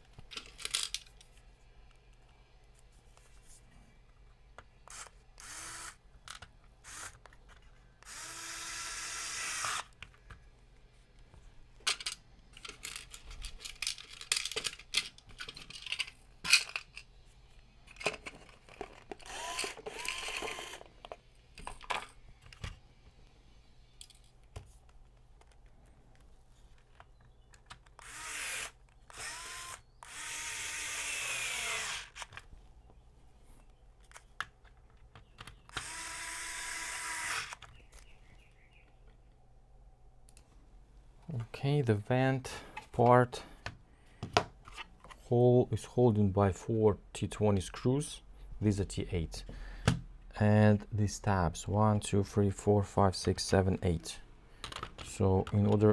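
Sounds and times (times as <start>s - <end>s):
power screwdriver whining: 4.9s - 6.0s, 6.8s - 7.2s, 8.0s - 10.0s, 19.2s - 20.9s, 28.0s - 32.3s, 35.7s - 37.6s.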